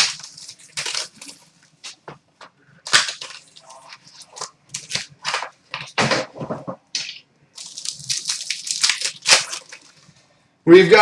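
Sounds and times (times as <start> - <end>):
foil wrappers crinkling and tearing: 0.0 - 2.0, 2.8 - 6.0, 7.0 - 10.2.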